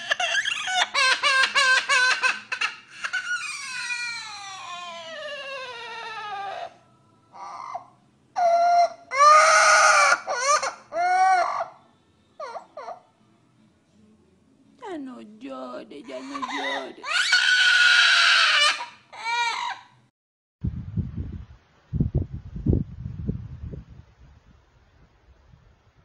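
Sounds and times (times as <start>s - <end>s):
animal crying out: 0.0s - 11.8s, 12.4s - 13.1s, 16.1s - 20.0s.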